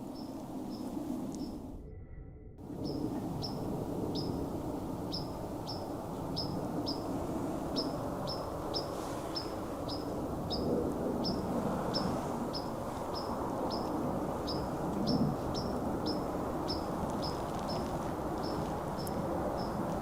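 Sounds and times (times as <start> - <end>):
bird chirping: 2.8 - 4.4, 5.1 - 7.0, 7.8 - 19.8.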